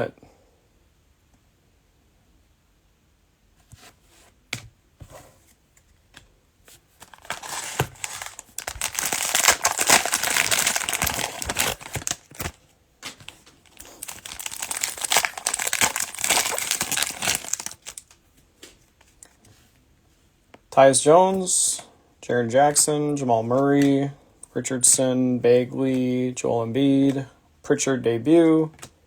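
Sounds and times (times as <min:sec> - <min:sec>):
plastic wrapper tearing and crinkling: 0:07.0 - 0:18.2.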